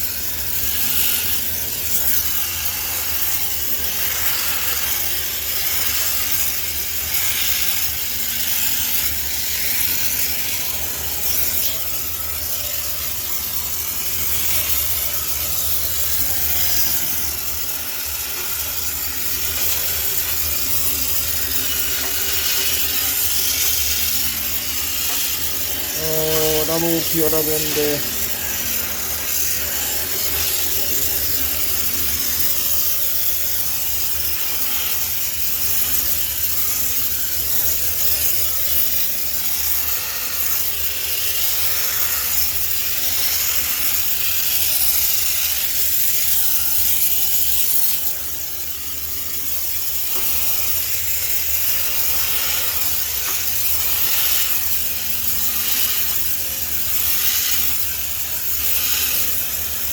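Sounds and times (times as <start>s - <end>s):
steam jet hissing: 0.0s - 59.9s
steamer unit humming: 0.1s - 35.0s, 47.9s - 59.9s.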